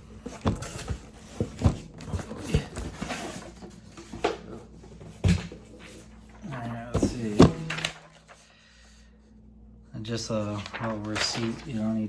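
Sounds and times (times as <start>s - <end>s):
cardboard and packing rustling: 0.0s - 8.5s, 10.4s - 12.0s
cardboard box knocks and thuds: 6.9s - 7.7s.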